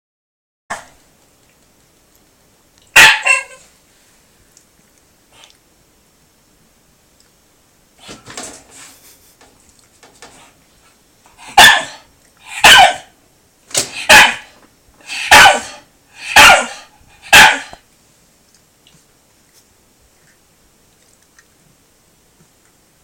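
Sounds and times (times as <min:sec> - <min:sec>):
dog barking: 0:03.0 - 0:03.6, 0:11.5 - 0:13.2, 0:14.0 - 0:14.5, 0:15.2 - 0:17.8.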